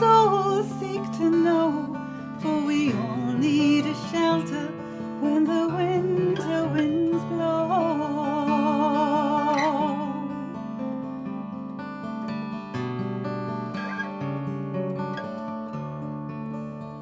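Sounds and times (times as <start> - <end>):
person singing: 0.0 - 10.6
strummed acoustic guitar: 0.0 - 17.0.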